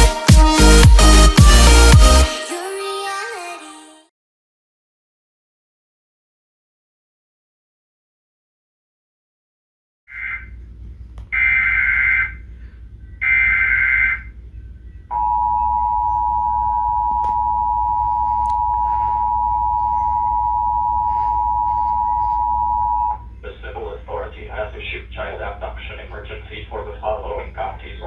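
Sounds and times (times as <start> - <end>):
low hum: 10.2 - 28.0
two-tone attention signal: 15.1 - 23.2.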